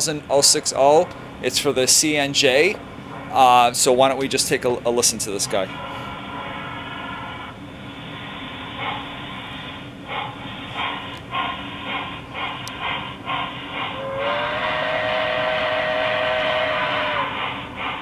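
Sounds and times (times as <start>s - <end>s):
steam locomotive chuffs: 0.0s - 18.0s
train whistle blast: 13.8s - 17.7s.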